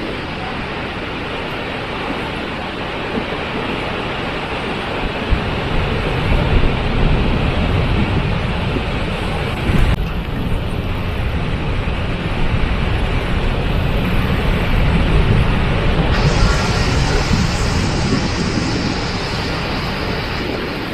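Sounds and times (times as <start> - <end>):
waterfall rushing: 16.1 - 20.9.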